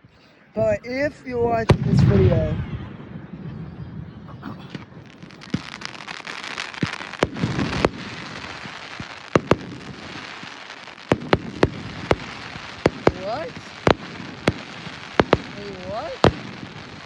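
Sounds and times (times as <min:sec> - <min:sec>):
fireworks crackling: 0:00.6 - 0:17.0
sharp firework pops: 0:04.7 - 0:17.0.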